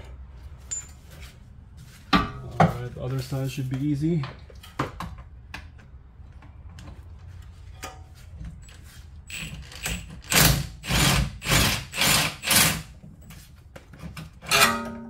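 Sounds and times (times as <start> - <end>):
impact wrench bursts: 9.3 - 12.9.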